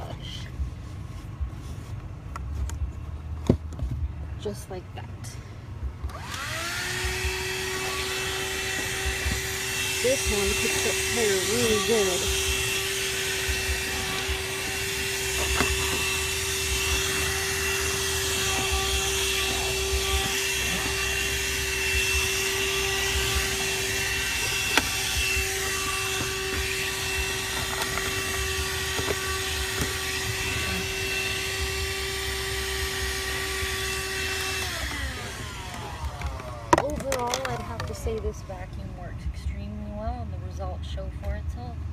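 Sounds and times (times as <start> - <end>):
vacuum cleaner motor whine: 6.0 - 38.5.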